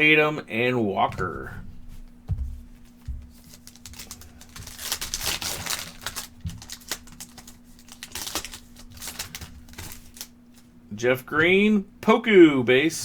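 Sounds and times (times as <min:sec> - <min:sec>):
steady low hum: 0:00.0 - 0:13.0
card wrappers crinkling: 0:02.8 - 0:10.7.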